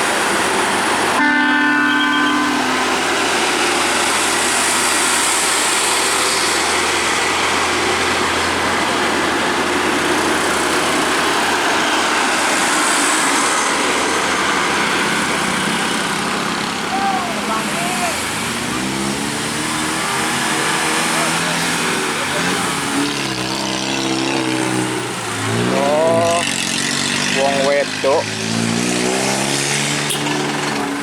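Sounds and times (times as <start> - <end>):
bus engine and road noise: 0.0 - 31.0
multi-tone bus air horn: 1.1 - 4.9, 30.0 - 30.4.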